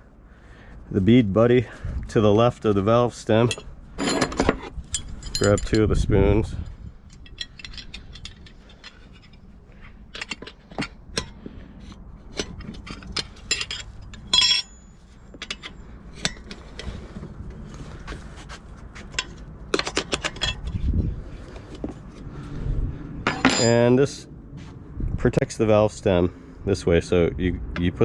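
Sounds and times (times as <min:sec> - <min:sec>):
metal tire spoons clinking: 0:03.4 - 0:06.1, 0:07.0 - 0:11.4, 0:12.3 - 0:17.0, 0:19.1 - 0:20.8, 0:23.3 - 0:24.2.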